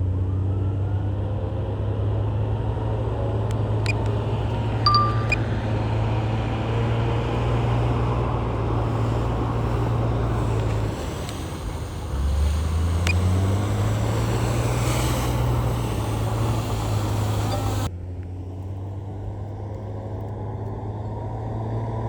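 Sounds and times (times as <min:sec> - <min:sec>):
diesel machinery engine running: 0:02.8 - 0:17.9.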